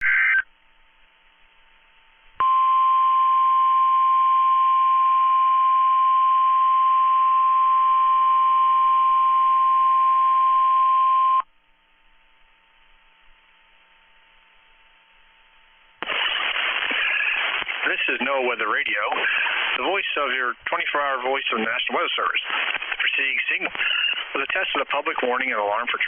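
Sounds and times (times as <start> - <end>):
loud steady high alarm tone: 16.0 - 18.5
warbling data burst: 16.0 - 19.8.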